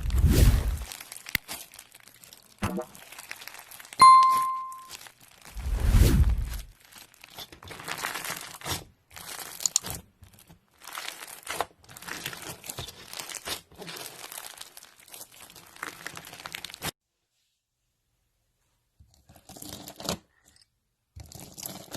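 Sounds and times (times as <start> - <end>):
slime crackling and crinkling: 0.0 - 4.0, 4.9 - 5.6, 6.4 - 17.0.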